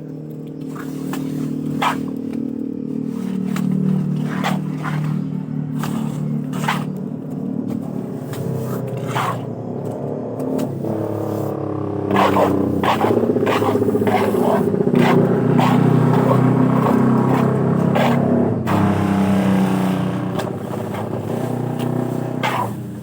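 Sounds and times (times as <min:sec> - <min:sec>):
engine running: 0:00.0 - 0:23.0.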